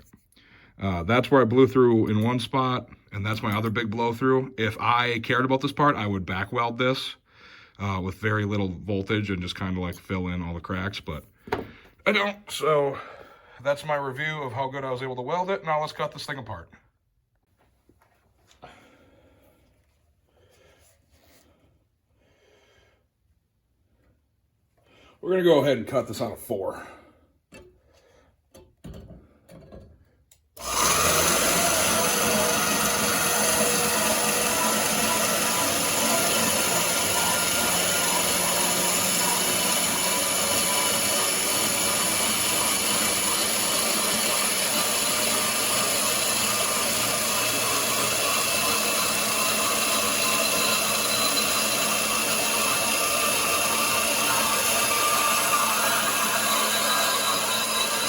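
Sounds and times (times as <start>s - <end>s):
bandsaw cutting steel tube: 30.6s - 58.0s.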